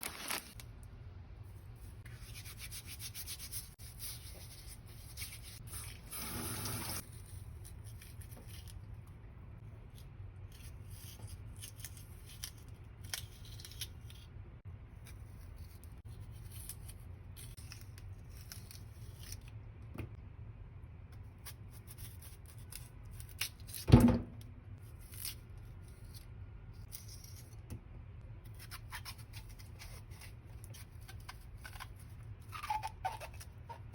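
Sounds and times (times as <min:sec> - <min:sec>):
hands rubbing and scraping food: 0:01.8 - 0:06.1.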